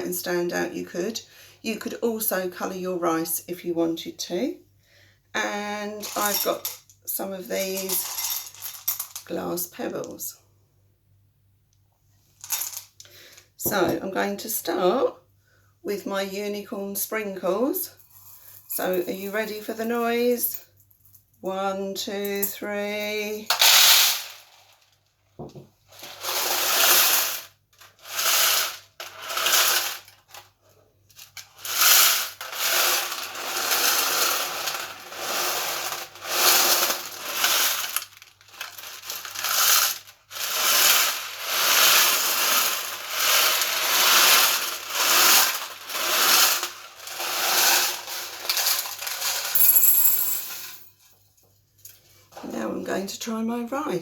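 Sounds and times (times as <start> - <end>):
sprinkles rattling on foil tray: 26.0 - 30.5, 31.1 - 49.6.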